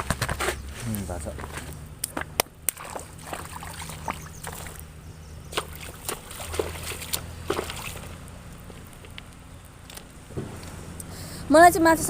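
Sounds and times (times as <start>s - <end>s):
low steady hum: 0.0s - 12.0s
shallow water sloshing and splashing: 2.7s - 9.2s.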